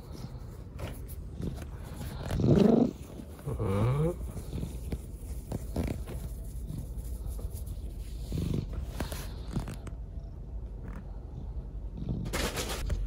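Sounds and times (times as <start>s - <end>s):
cat purring: 1.3s - 12.4s.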